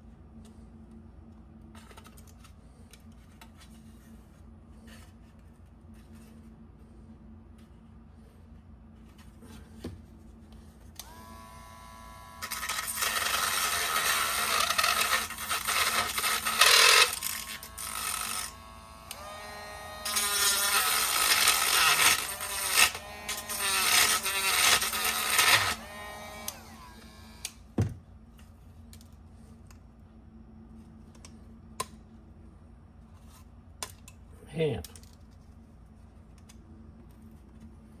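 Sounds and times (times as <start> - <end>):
rotary tool grinding plastic: 11.0 - 27.6
rotary tool whining: 11.0 - 27.7.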